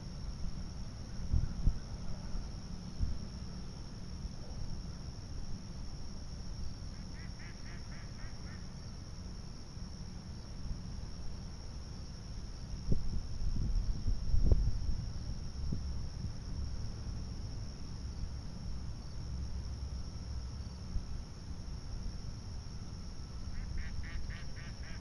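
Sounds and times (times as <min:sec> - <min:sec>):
high insect drone: 0:00.0 - 0:25.0
wind rumbling on microphone: 0:01.2 - 0:03.4, 0:12.6 - 0:16.3.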